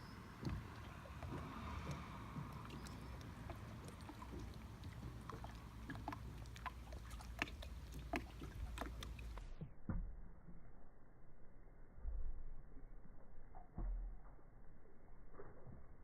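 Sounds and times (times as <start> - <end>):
water dripping: 0.0 - 10.0, 12.7 - 16.0
low steady rumble: 0.0 - 16.0.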